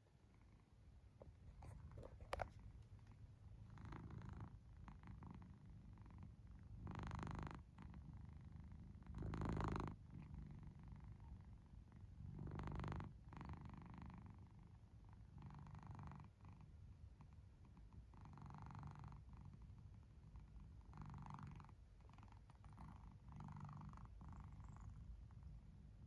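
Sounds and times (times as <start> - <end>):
cat snoring: 3.8 - 11.4, 12.2 - 14.4, 15.3 - 16.6, 18.1 - 19.5, 20.8 - 25.0.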